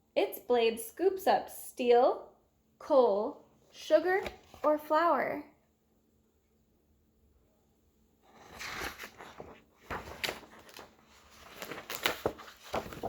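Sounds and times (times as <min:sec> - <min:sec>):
paper book pages turning: 0:04.0 - 0:04.8, 0:08.3 - 0:13.0.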